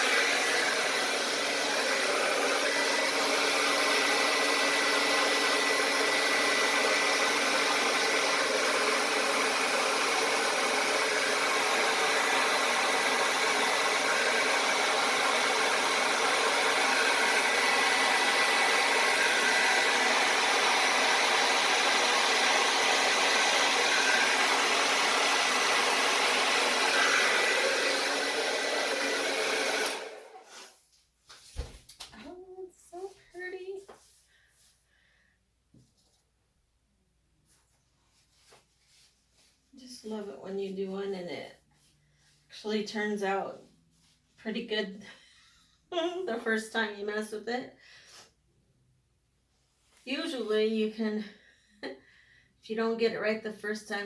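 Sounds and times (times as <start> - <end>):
blow dryer running: 0.0 - 30.7.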